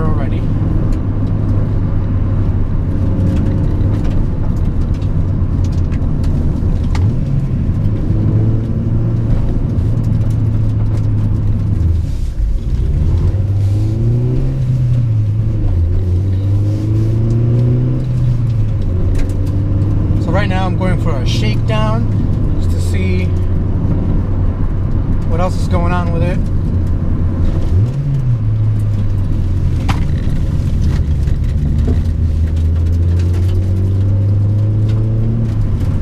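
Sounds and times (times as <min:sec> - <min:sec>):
car engine revving: 0:00.0 - 0:36.0.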